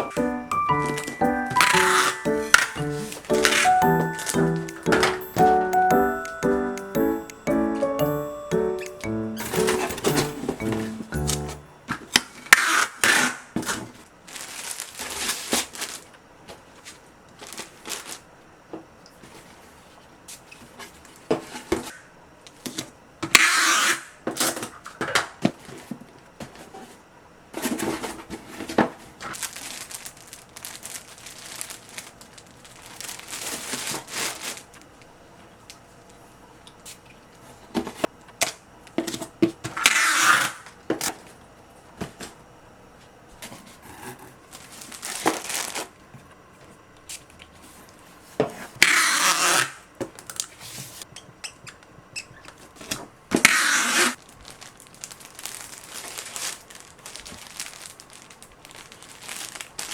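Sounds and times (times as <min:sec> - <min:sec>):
paper or plastic rustling: 0:29.3 - 0:34.7, 0:44.6 - 0:45.9, 0:54.2 - 0:59.9.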